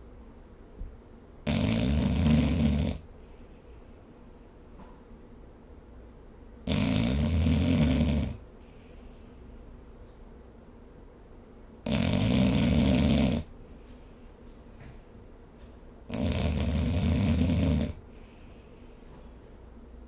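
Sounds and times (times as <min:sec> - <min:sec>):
person snoring: 0:01.5 - 0:03.0, 0:06.7 - 0:08.4, 0:11.9 - 0:13.5, 0:16.1 - 0:18.0.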